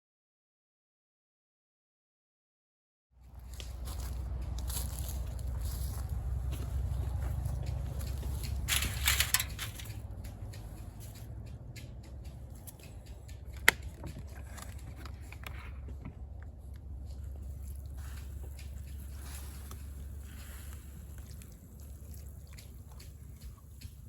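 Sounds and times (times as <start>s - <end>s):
campfire crackling: 3.3s - 24.0s
brief rustle: 8.3s - 10.0s.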